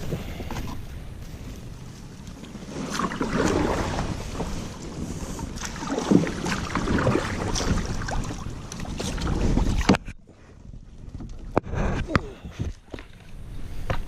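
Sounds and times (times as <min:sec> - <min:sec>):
wind buffeting microphone: 0:00.0 - 0:14.0
water splashing: 0:02.3 - 0:10.2.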